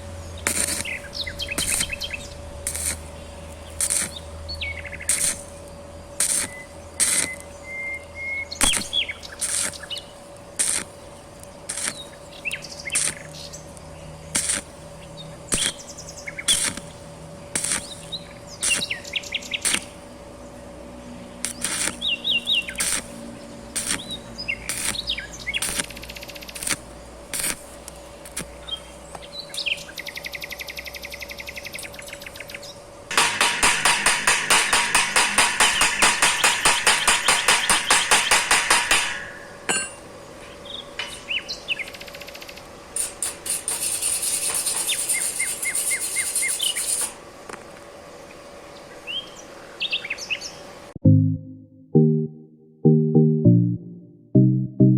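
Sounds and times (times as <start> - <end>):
birds chirping: 0.2 - 2.4, 3.1 - 10.3, 40.2 - 42.8.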